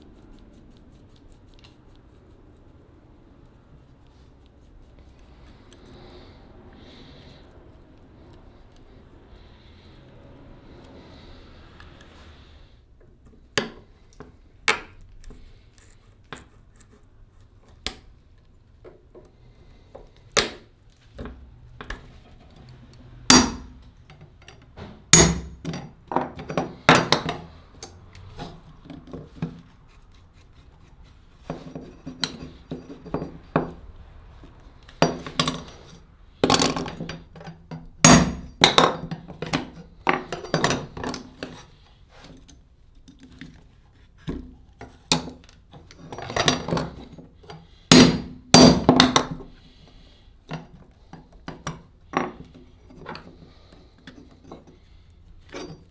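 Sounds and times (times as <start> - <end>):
hammer striking metal cleaver: 23.3 - 23.8, 25.1 - 25.8, 38.1 - 39.1, 47.9 - 49.3.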